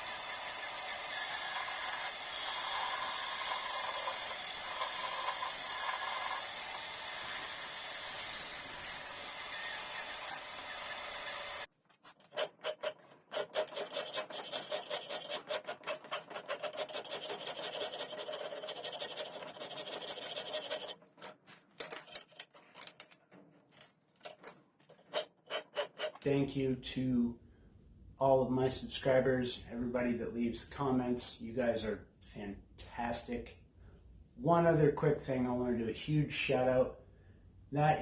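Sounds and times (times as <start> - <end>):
hand filing scraping: 0.0 - 21.0, 25.0 - 26.3.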